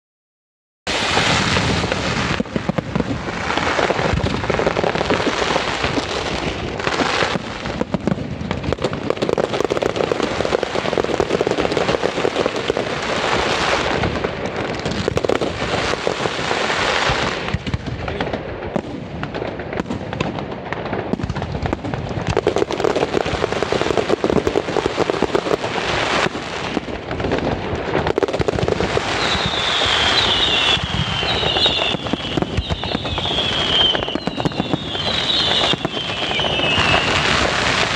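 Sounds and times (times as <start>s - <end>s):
fireworks bangs and crackling: 0.9s - 37.9s
firework whistles falling in pitch: 28.9s - 37.9s.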